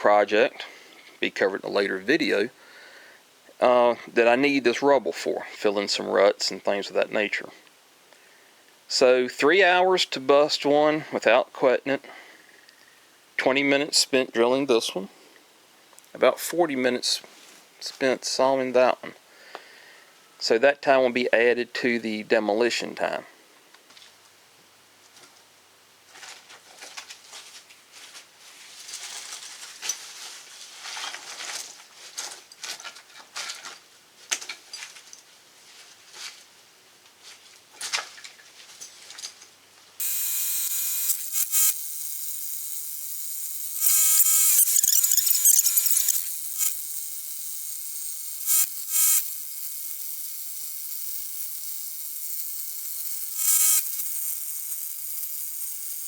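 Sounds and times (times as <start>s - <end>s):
power tool buzzing whine: 40.0s - 56.0s.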